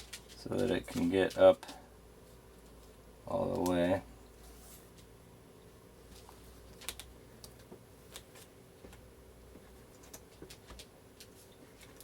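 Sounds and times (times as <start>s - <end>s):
small clicks handling laptop parts: 6.7s - 8.5s.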